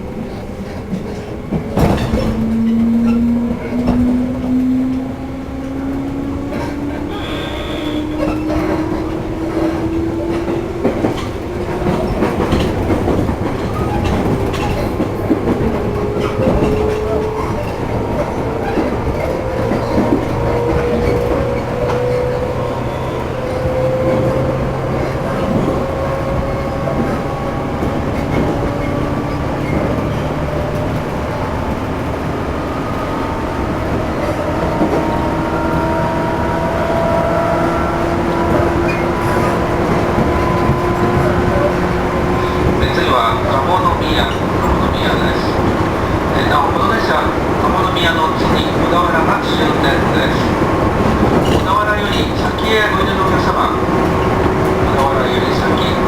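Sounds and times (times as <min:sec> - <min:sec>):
clatter at rail joints: 0:00.1 - 0:32.4, 0:38.2 - 0:56.0.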